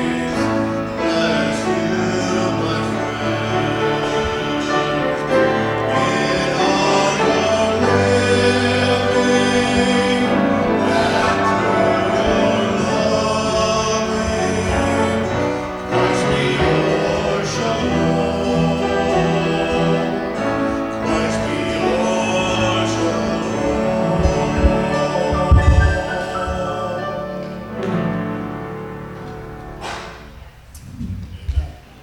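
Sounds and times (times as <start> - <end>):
instrumental accompaniment: 0.0 - 30.4
voices singing worship song: 0.0 - 31.9.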